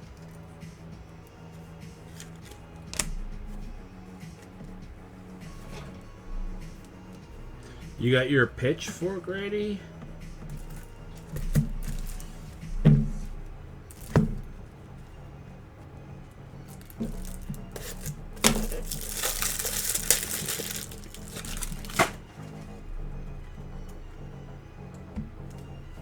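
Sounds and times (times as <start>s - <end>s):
packaging rustling: 0.0s - 7.9s, 10.0s - 15.0s, 16.6s - 22.7s
background music: 0.0s - 26.0s
card boxes knocking: 10.0s - 14.8s, 16.7s - 22.5s.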